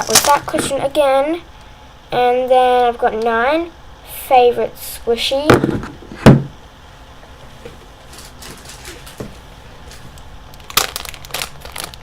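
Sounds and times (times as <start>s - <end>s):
loud thump: 5.5s - 6.6s.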